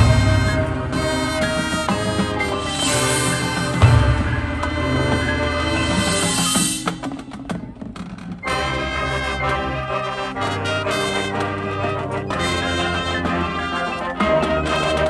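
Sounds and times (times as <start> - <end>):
brass section chords: 0.0 - 7.5, 8.4 - 15.0.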